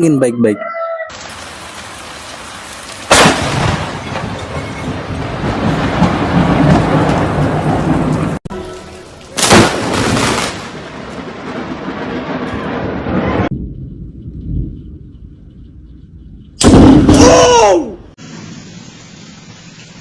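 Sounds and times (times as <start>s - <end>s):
heavy rain: 1.1s - 13.5s
thunderclap and rumbling: 1.2s - 8.5s, 9.4s - 18.2s.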